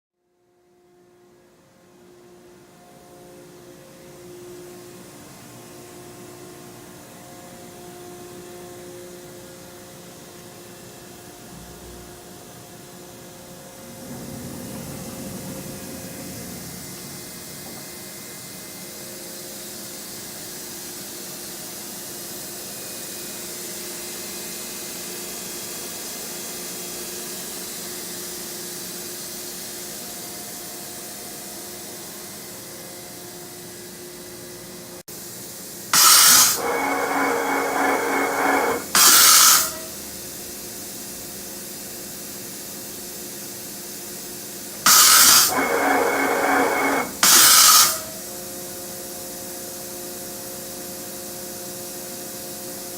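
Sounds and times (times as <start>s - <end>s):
mechanical whirring with whine: 13.2s - 18.8s, 36.0s - 39.9s, 44.9s - 48.2s
machining center running: 13.7s - 18.5s, 36.0s - 39.9s, 44.9s - 48.2s
loud hissing blast: 36.0s - 39.9s, 44.9s - 48.3s.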